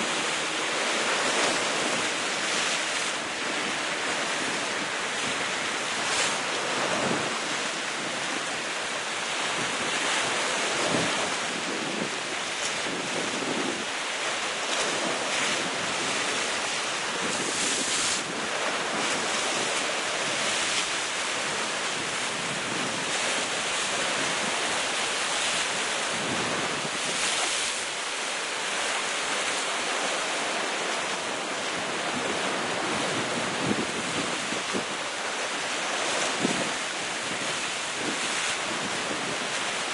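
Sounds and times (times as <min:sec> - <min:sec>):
sea waves breaking on rocks: 0:00.0 - 0:39.9
wind buffeting microphone: 0:09.4 - 0:16.5, 0:17.1 - 0:24.8, 0:31.8 - 0:35.1, 0:36.0 - 0:39.9.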